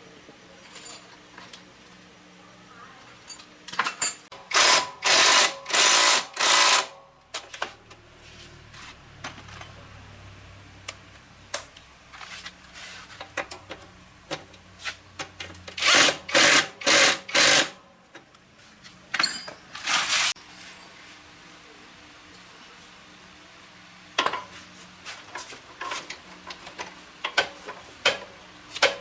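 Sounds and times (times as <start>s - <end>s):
power tool bursts: 4.4s - 7.0s, 15.8s - 17.8s.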